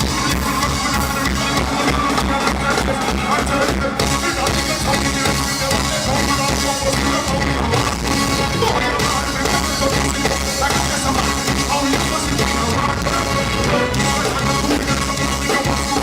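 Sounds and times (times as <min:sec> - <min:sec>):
loud dancehall music: 0:00.0 - 0:16.0.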